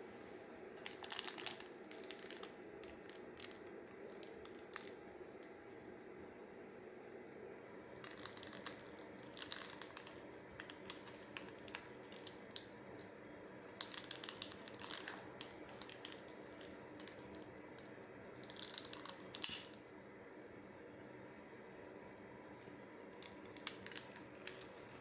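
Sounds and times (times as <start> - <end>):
low steady hum: 0.0 - 25.0
clicks and crinkling from handled objects: 0.7 - 5.6, 8.0 - 19.8, 22.6 - 25.0.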